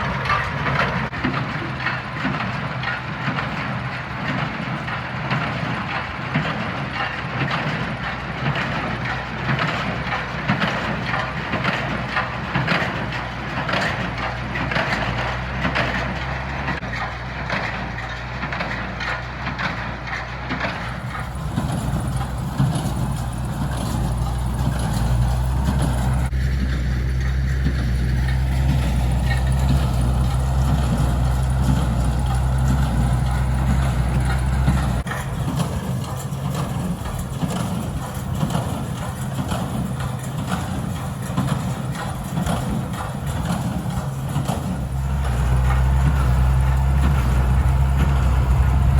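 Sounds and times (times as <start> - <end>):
tractor engine running: 0.0 - 48.9
baler rattling: 10.6 - 48.9.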